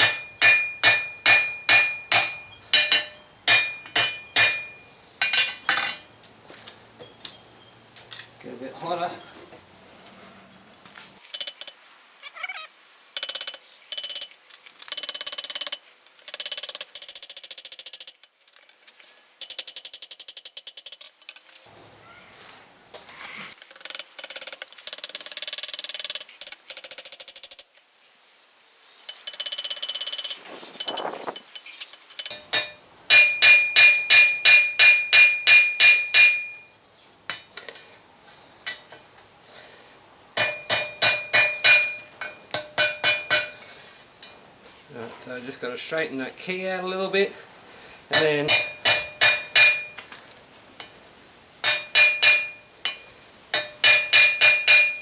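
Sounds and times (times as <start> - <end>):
hammer ringing on anvil: 0.0 - 6.0, 32.3 - 36.7, 40.4 - 43.6, 48.1 - 50.0, 51.6 - 55.0.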